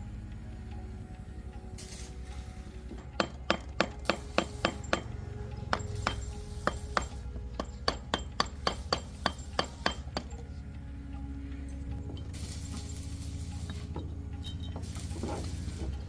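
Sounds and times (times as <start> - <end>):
background music: 0.0 - 16.0
hammer tapping on metal: 2.9 - 10.5.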